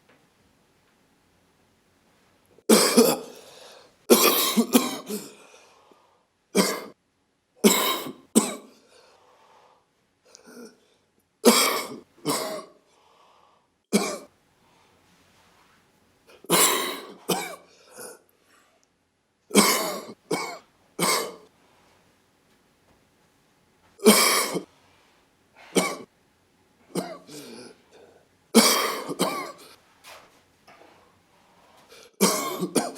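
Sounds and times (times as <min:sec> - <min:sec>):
person coughing: 0:02.7 - 0:05.5, 0:06.6 - 0:07.0, 0:07.6 - 0:08.8, 0:11.4 - 0:12.8, 0:13.9 - 0:14.3, 0:16.3 - 0:18.2, 0:19.5 - 0:21.5, 0:24.0 - 0:24.7, 0:25.7 - 0:26.1, 0:26.9 - 0:28.0, 0:28.6 - 0:29.8, 0:31.9 - 0:32.9.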